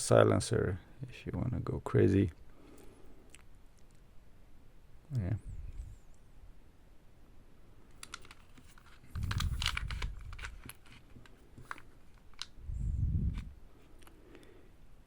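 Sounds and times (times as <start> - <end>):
plastic and metal clicks: 7.9 - 12.6.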